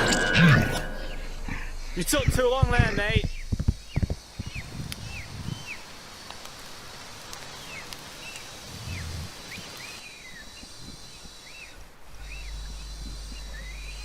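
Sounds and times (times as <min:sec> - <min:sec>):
low hum: 0:00.0 - 0:05.6, 0:12.0 - 0:14.0
bird chirping: 0:00.0 - 0:05.9, 0:07.5 - 0:14.0
steady high hiss: 0:00.9 - 0:14.0.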